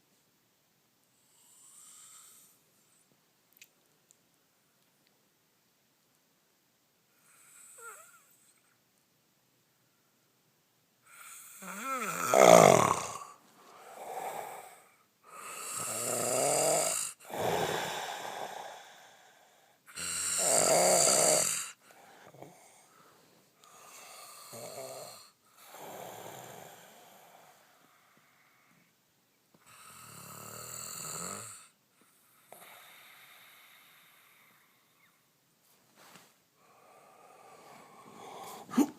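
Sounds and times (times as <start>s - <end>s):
man snoring loudly: 11.1s - 19.2s, 19.9s - 22.6s, 23.7s - 27.6s, 29.7s - 31.7s.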